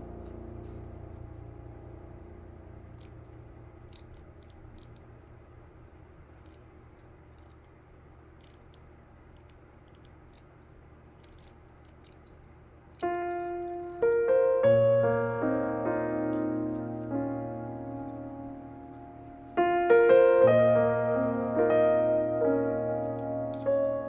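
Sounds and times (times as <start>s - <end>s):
piano music: 0.0s - 4.0s, 13.0s - 24.0s
background music held notes: 0.0s - 4.1s, 13.0s - 24.0s
paper crafting clicks and taps: 3.0s - 5.4s, 6.4s - 17.2s, 22.9s - 24.0s.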